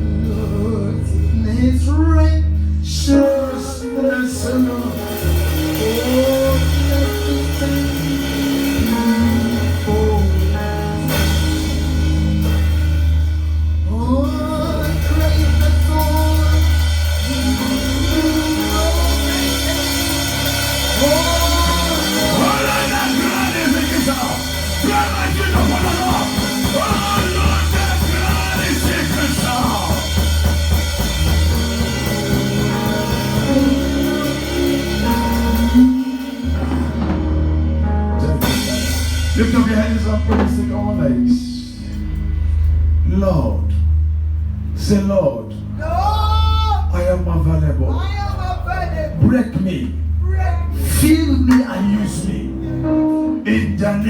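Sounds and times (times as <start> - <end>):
person singing: 0.0 - 11.9, 13.9 - 30.5, 31.5 - 37.2
heavy bass: 0.0 - 54.0
live band playing: 2.5 - 43.0, 45.6 - 54.0
drum kit: 3.2 - 43.2, 48.2 - 53.4.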